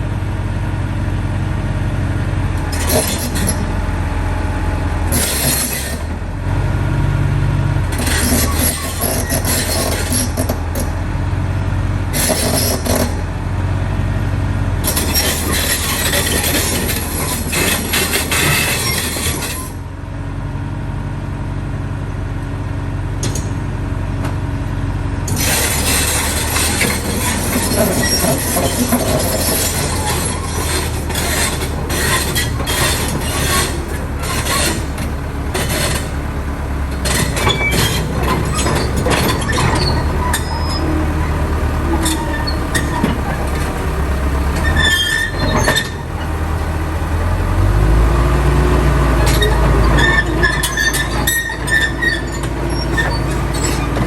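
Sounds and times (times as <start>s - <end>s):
diesel engine running: 0.0s - 54.0s
steel tracks clanking and squealing: 2.6s - 6.2s, 7.9s - 11.1s, 12.1s - 13.3s, 14.8s - 19.9s, 23.2s - 23.7s, 25.2s - 54.0s.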